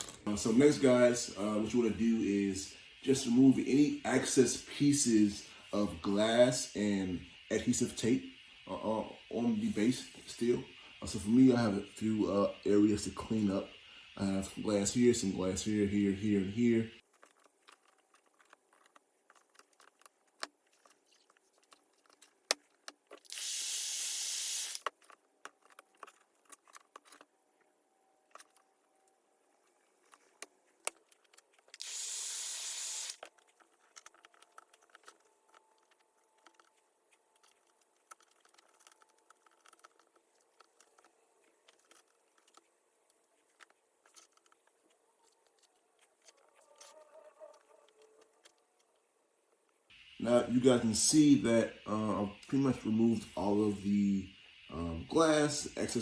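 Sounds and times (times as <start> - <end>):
steady hissing blast: 0.3 - 17.0, 23.3 - 24.8, 49.9 - 56.0.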